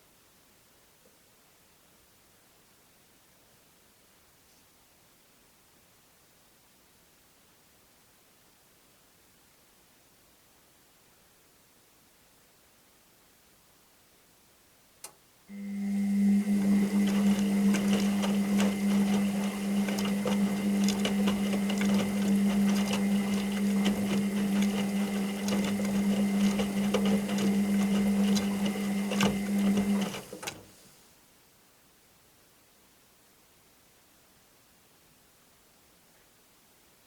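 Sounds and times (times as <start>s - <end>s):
washing machine drum tumbling: 15.9s - 30.7s
washing machine click: 16.2s - 30.8s.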